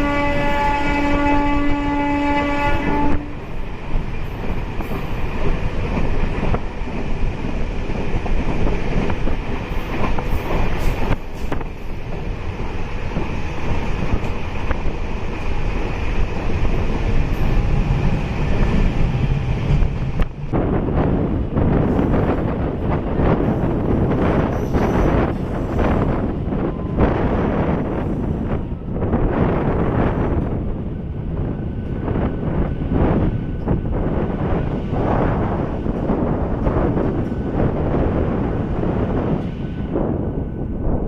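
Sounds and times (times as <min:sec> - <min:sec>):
train horn: 0:00.0 - 0:03.6
train rumbling on rails: 0:00.0 - 0:41.0.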